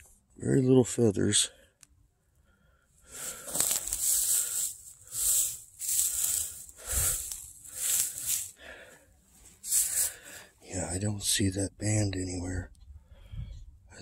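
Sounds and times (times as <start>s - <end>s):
dry leaf litter rustling: 3.1s - 8.8s, 9.6s - 10.3s.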